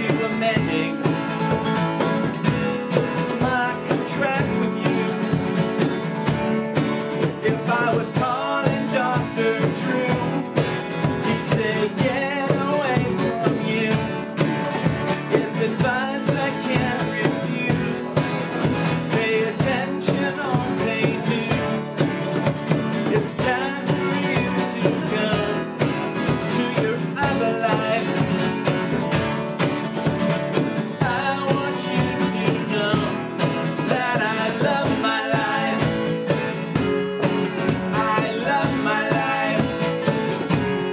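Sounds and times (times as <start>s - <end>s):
live rock band playing: 0.0s - 40.9s.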